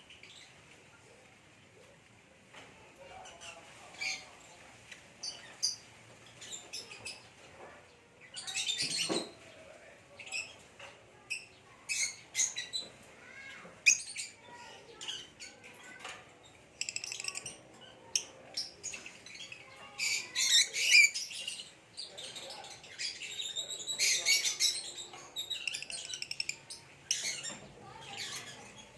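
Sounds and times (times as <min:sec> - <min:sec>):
lovebirds chirping: 0:13.9 - 0:28.9.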